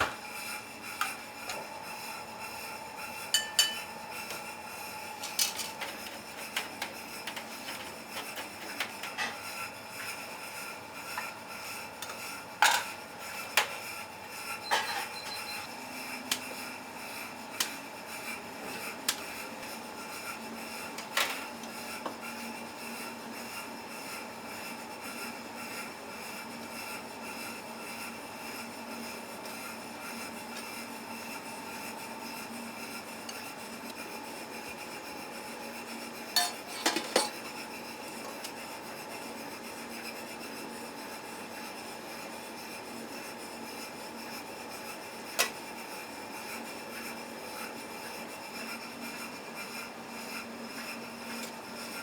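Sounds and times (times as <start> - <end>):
steady mechanical hum: 0.0 - 52.0
metal utensils clinking on dishes: 3.3 - 4.0, 5.2 - 9.4, 12.0 - 12.9, 14.6 - 15.5, 36.4 - 37.5.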